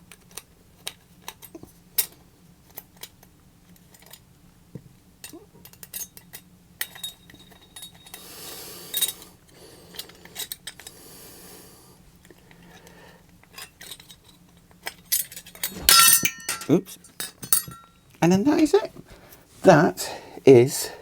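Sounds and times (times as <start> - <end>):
small metal clicks and clinks: 5.2 - 8.2, 13.5 - 17.9
metal scraping: 15.6 - 16.8.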